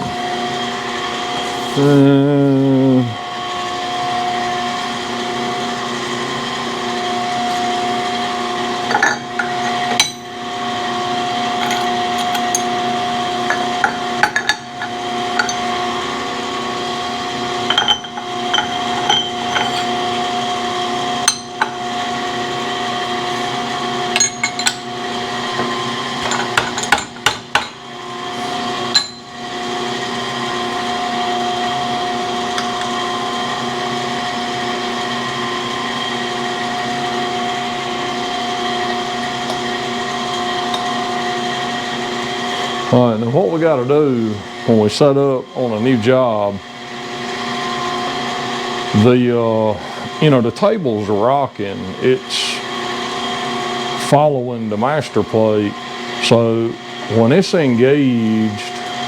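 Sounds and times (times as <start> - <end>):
machine hum: 0.0 - 59.0
metal clanks and taps: 13.5 - 15.6, 17.7 - 19.9, 25.6 - 27.8.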